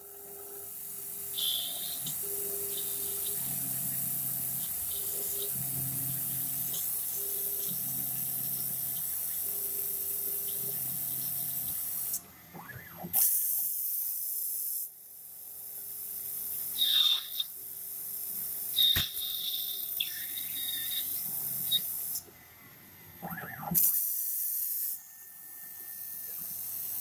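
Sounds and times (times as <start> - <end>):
machine hum: 0.0 - 11.6
short high squeal: 16.8 - 17.5, 18.8 - 21.8.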